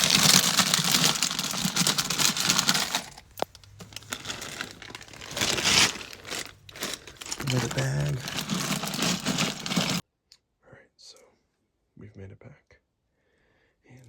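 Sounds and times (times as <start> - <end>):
belongings rustling and clattering: 0.0 - 10.0.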